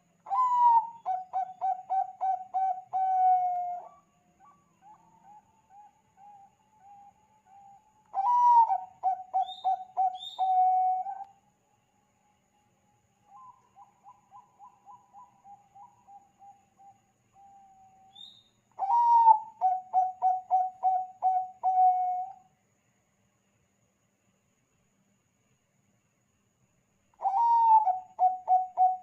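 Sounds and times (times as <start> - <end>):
dove cooing: 0.3 - 11.2, 18.8 - 22.4, 27.2 - 29.0.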